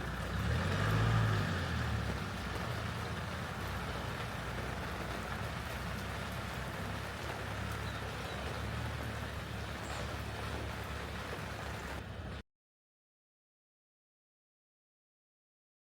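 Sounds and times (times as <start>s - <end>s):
steady rain falling: 0.0s - 12.4s.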